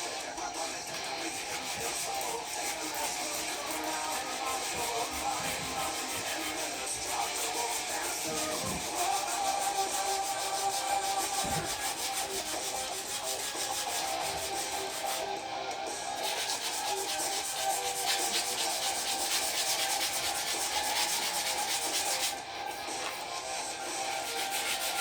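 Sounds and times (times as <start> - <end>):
sanding on metal: 0.6 - 15.4, 16.1 - 23.2, 23.8 - 25.0.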